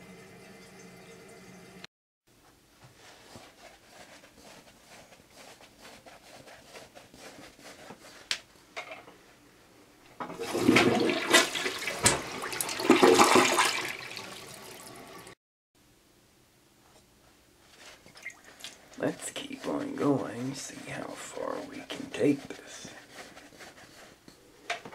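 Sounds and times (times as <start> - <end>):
toilet flush rush of water: 10.2 - 15.4.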